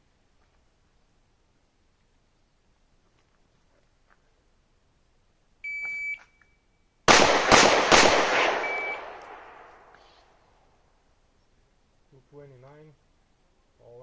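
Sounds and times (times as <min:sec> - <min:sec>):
pistol shots echoing: 0:07.1 - 0:09.9
shot timer beep: 0:08.6 - 0:09.2.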